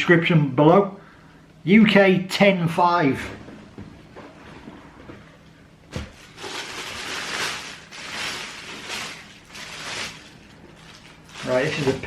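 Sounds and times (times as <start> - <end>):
packaging rustling: 6.0 - 12.0.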